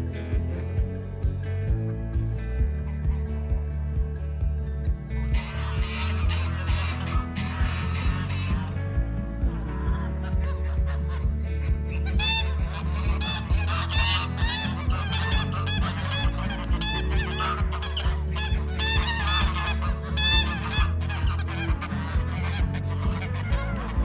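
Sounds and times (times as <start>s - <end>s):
geese honking: 5.2s - 24.0s.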